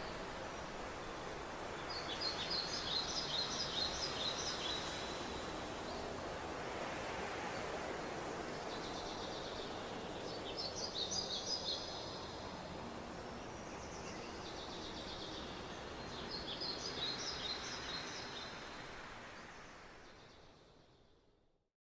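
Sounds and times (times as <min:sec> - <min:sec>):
steady background hiss: 0:00.0 - 0:21.4.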